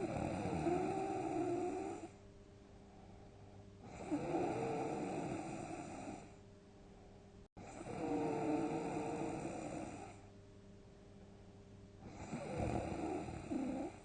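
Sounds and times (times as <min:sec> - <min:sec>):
person snoring heavily: 0:00.0 - 0:02.1, 0:03.9 - 0:06.3, 0:07.6 - 0:10.2, 0:12.1 - 0:14.0.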